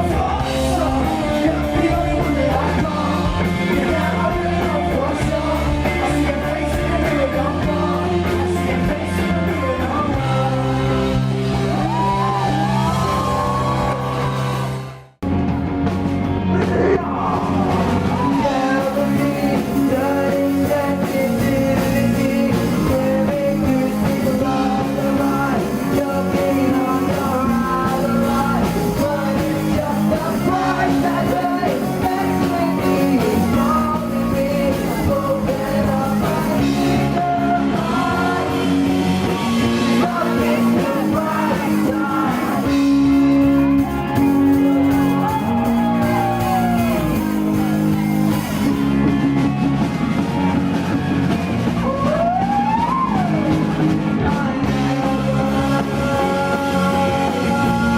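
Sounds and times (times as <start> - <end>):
person singing: 0.0 - 14.5, 16.4 - 49.6, 50.2 - 57.9
rock band playing live: 0.0 - 57.9.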